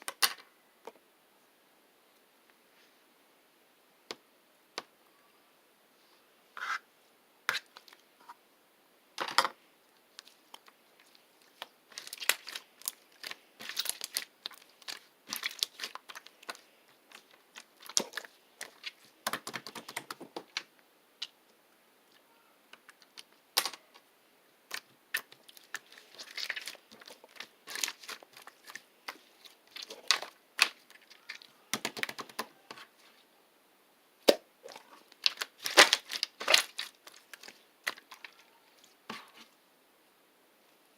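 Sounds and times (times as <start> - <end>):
slime squishing and popping: 11.5 - 20.0, 34.2 - 38.3.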